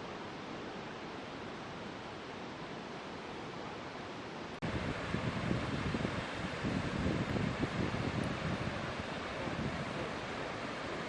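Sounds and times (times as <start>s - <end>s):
waterfall and river roaring: 0.0s - 11.0s
wind gusts on microphone: 4.6s - 11.0s.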